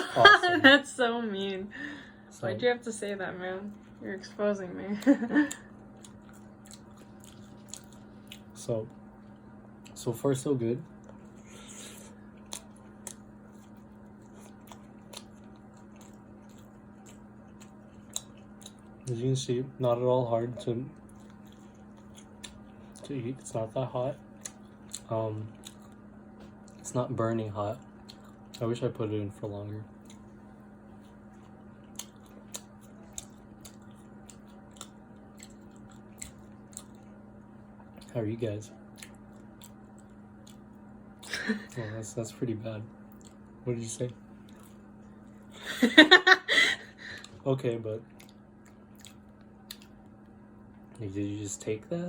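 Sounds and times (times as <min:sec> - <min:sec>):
faint steady hum: 0:00.0 - 0:52.0
person chewing food: 0:05.0 - 0:10.0, 0:10.8 - 0:19.2, 0:20.9 - 0:26.8, 0:27.6 - 0:28.8, 0:29.8 - 0:38.2, 0:38.8 - 0:41.8, 0:43.0 - 0:43.6, 0:44.4 - 0:46.0, 0:46.8 - 0:47.4, 0:48.1 - 0:51.0.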